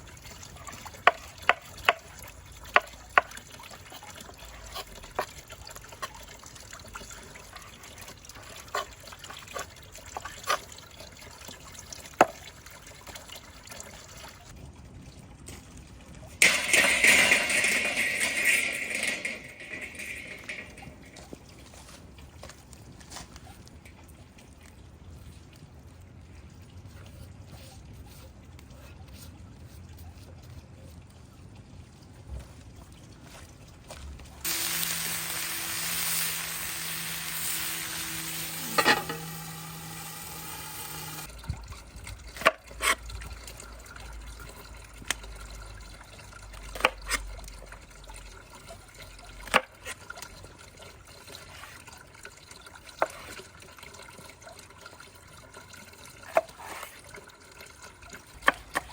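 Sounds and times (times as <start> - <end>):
liquid pouring into vessel: 34.4 - 58.9.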